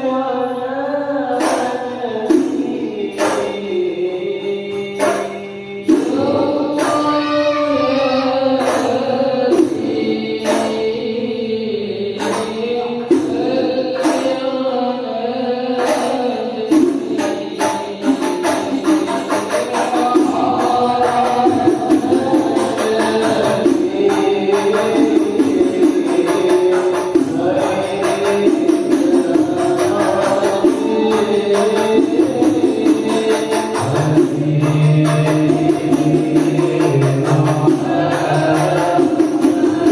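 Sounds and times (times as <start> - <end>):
voices singing together: 0.0 - 39.9
frame drums with jingles: 4.5 - 7.4, 15.8 - 39.9.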